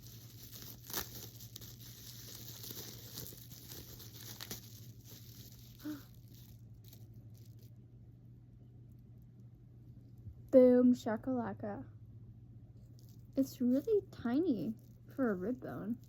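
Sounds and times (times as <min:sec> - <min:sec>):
packaging wrap crinkling and tearing: 0:00.0 - 0:07.8, 0:12.9 - 0:16.0.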